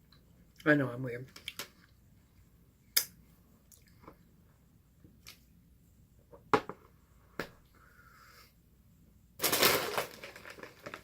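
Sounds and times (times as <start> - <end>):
plastic snack bag crinkling: 9.4 - 11.0.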